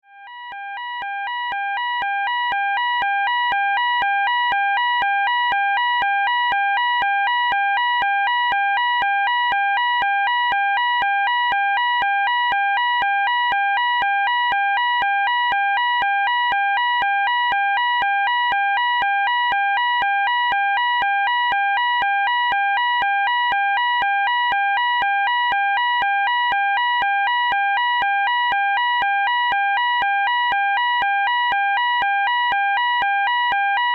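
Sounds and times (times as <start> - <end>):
two-tone fire alarm: 0.0 - 33.9.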